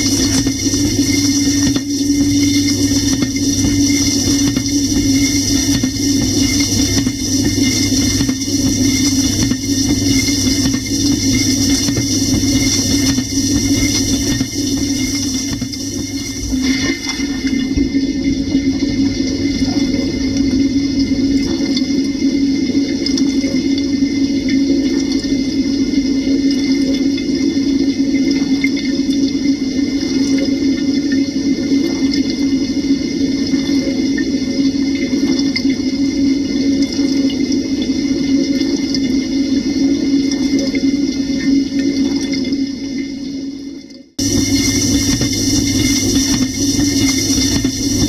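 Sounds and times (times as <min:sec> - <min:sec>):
water splashing over dishes: 0:00.0 - 0:20.6, 0:44.2 - 0:48.0
dishwasher pump hum: 0:00.0 - 0:48.0.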